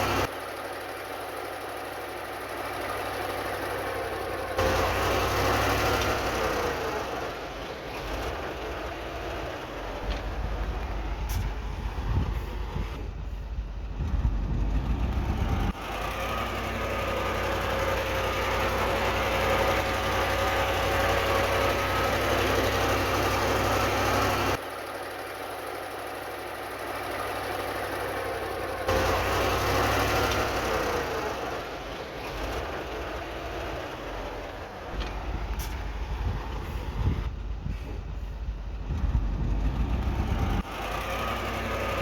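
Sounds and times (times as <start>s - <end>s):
heavy diesel machinery rumbling: 0.0s - 42.0s.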